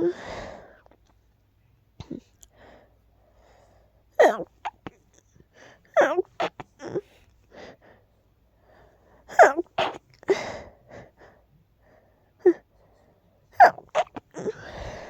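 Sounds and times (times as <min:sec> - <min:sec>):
person sneezing: 0:09.3 - 0:10.0, 0:13.6 - 0:15.0.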